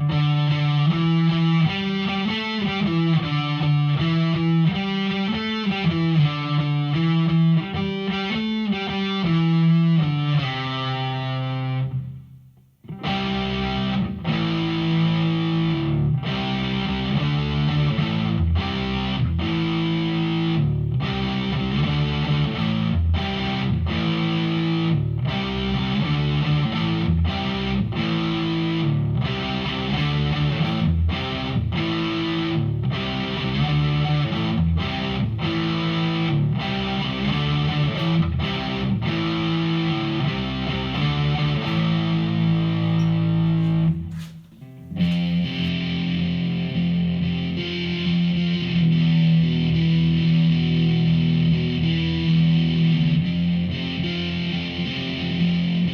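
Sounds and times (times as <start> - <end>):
distorted electric guitar riff: 0.0 - 12.0, 12.9 - 55.9.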